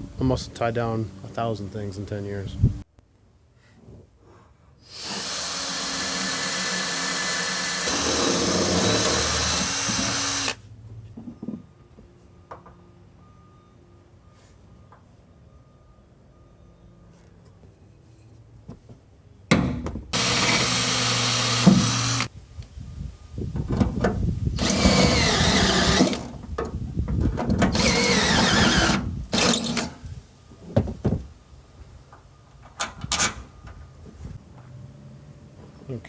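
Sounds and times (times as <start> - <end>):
power drill cutting sheet steel: 4.9 - 10.6, 20.2 - 22.3, 24.6 - 26.3, 27.7 - 29.9.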